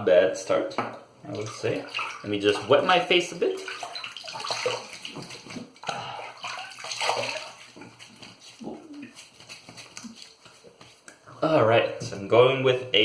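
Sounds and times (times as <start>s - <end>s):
water splashing on face: 3.5s - 10.7s.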